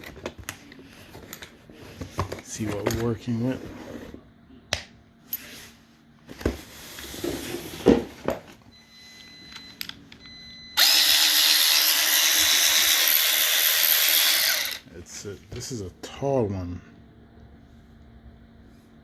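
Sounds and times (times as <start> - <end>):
cordless ratchet motor running: 10.8 - 14.8.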